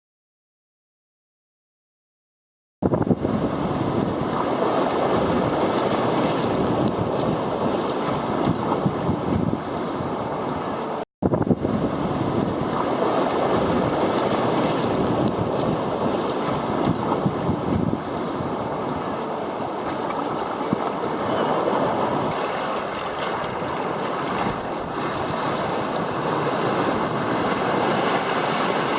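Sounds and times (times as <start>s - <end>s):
water rushing: 12.4s - 28.9s.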